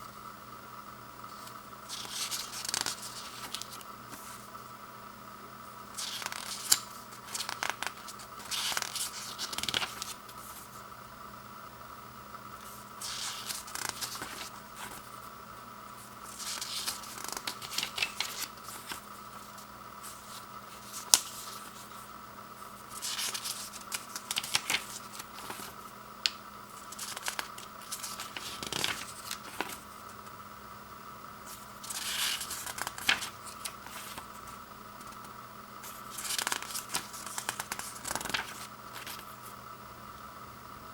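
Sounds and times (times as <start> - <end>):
faint steady hum: 0.0 - 40.9
packaging crinkling and tearing: 36.0 - 39.3.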